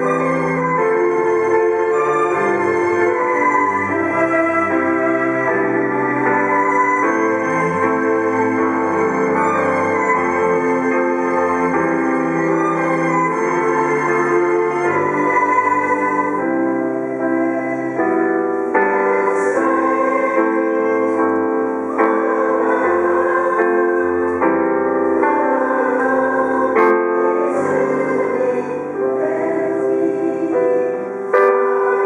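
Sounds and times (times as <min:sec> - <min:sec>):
choir-like chords: 0:00.0 - 0:32.0
slow piano ballad: 0:16.0 - 0:32.0.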